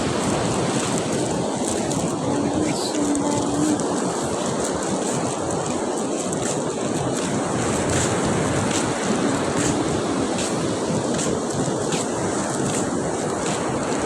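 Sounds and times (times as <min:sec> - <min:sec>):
surf washing onto beach: 0:00.0 - 0:14.0
wind buffeting microphone: 0:00.0 - 0:14.0.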